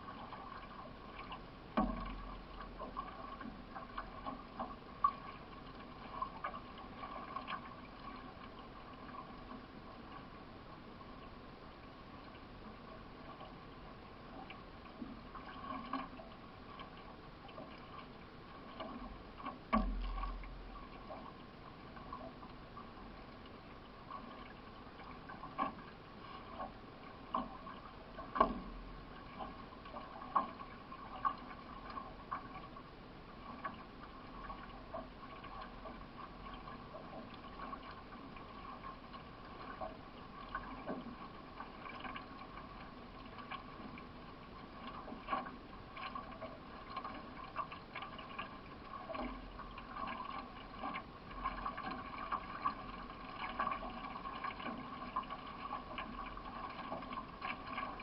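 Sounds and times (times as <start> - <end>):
paddle strokes splashing: 0.0 - 58.0
water washing along hull: 0.0 - 58.0.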